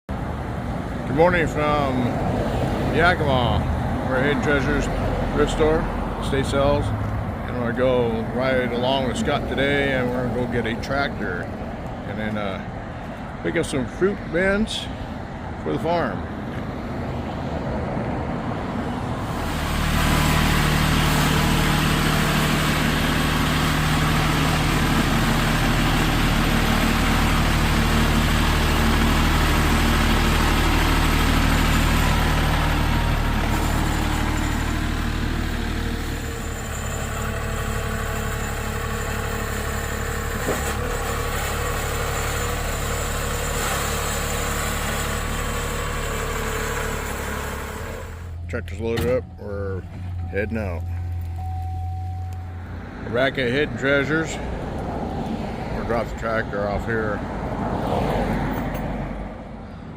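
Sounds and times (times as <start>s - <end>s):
vehicle engine running: 18.9s - 57.8s.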